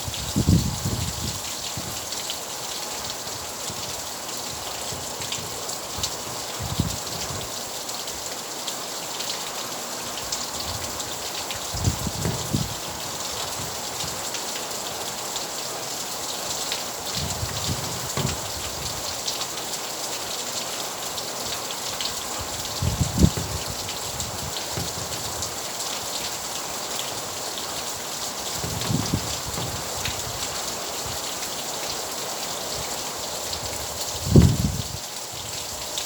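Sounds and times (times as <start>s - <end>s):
rain pattering: 0.0s - 36.0s
low thuds: 11.8s - 12.8s, 17.2s - 19.1s, 22.4s - 25.5s, 28.6s - 30.2s.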